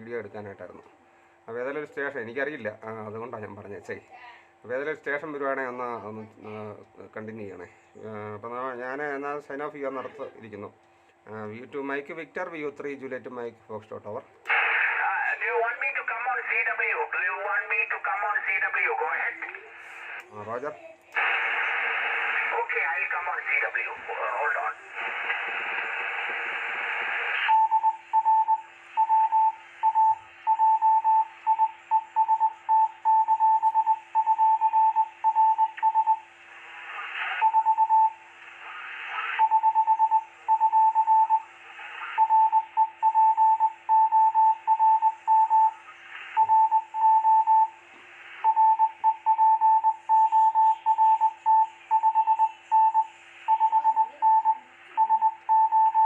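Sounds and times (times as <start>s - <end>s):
faint steady hum: 0.0s - 56.0s
radio receiver hiss: 14.4s - 20.4s, 21.1s - 27.5s, 36.4s - 37.6s, 38.2s - 39.4s, 41.5s - 42.3s, 45.8s - 46.4s, 47.8s - 48.5s
morse code tone keyed on and off: 42.2s - 45.7s, 46.4s - 47.7s, 48.4s - 56.0s.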